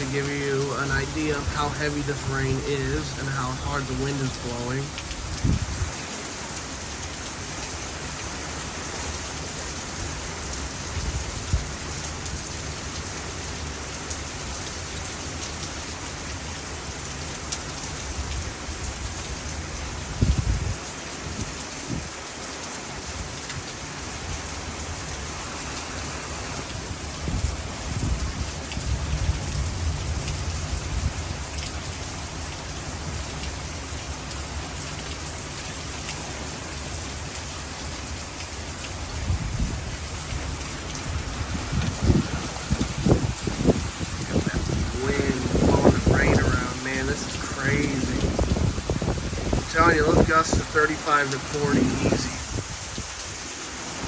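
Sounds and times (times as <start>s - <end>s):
heavy wind-driven rain: 0.0s - 54.0s
low thunder rumbles: 4.2s - 6.1s, 26.8s - 33.2s, 39.0s - 53.3s.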